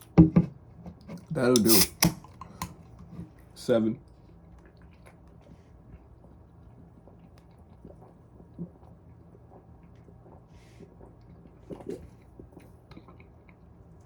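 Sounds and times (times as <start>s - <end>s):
short hiss: 1.6s - 2.1s.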